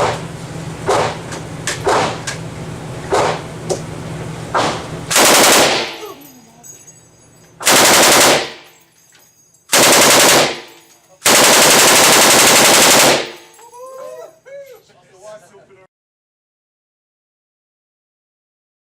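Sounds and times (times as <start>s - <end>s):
machine gun automatic fire: 5.1s - 6.1s, 7.6s - 8.7s, 9.7s - 13.5s.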